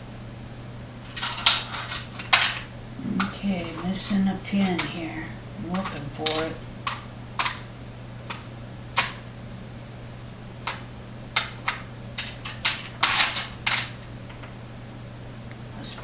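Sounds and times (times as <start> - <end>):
steady low hum: 0.0 - 16.0
small metal parts clicking: 1.1 - 7.7, 10.6 - 14.5.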